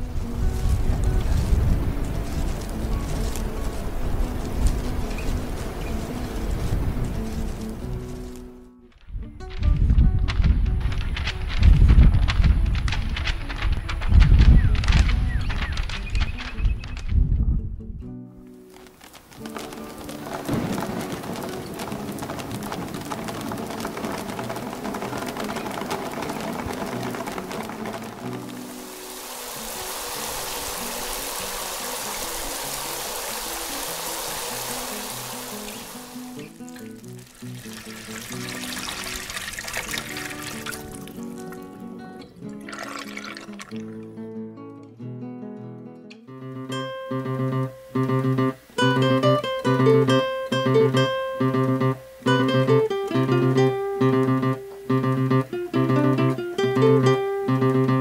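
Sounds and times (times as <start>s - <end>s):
rushing water: 0.0s - 8.6s, 18.7s - 44.1s
music of low held notes: 0.0s - 16.3s
acoustic guitar music: 0.0s - 58.0s.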